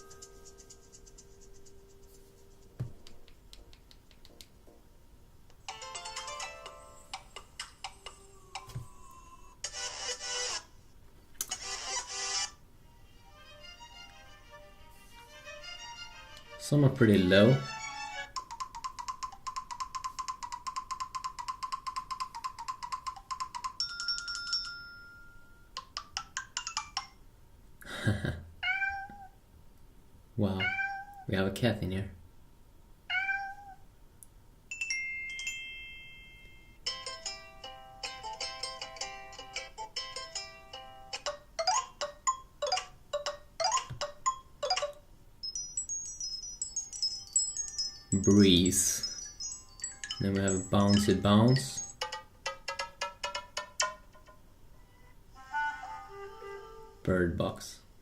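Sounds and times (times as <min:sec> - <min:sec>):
chime-like ringtone melody: 0:23.5 - 0:25.7, 0:34.7 - 0:52.9
electronic ringtone trill: 0:43.6 - 0:53.0
held chime: 0:45.4 - 0:52.0.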